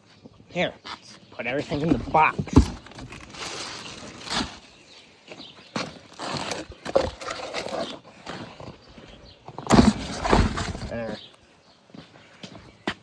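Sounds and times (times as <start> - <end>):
plastic parts knocking: 1.7 - 4.6, 5.9 - 8.0.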